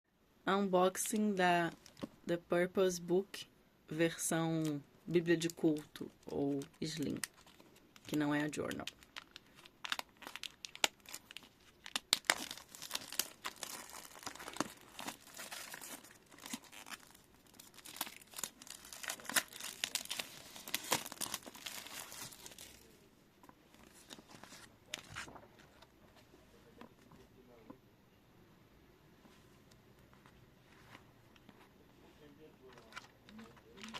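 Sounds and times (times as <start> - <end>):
packaging tearing and crinkling: 6.5 - 22.9.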